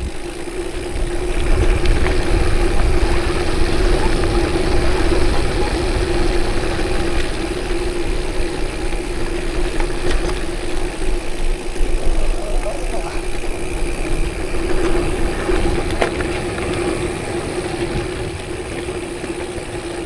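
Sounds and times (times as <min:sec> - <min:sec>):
vehicle engine running: 0:00.0 - 0:20.0
faint ticks: 0:08.7 - 0:16.9.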